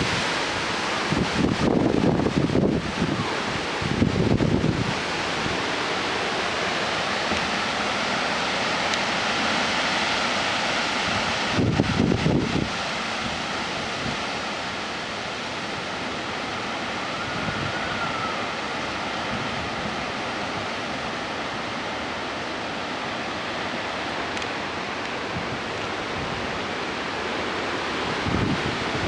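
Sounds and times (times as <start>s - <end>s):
thunderstorm rushing noise: 1.0s - 5.8s, 11.2s - 12.7s, 28.1s - 29.0s.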